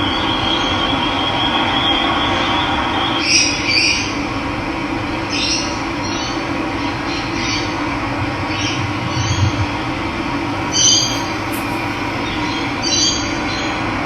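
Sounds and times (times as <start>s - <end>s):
running water: 10.6s - 12.9s
bird chirping: 10.7s - 12.8s.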